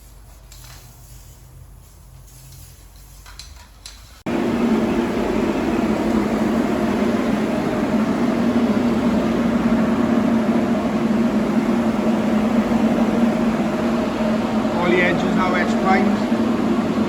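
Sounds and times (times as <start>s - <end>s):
workshop machine humming: 4.3s - 17.0s.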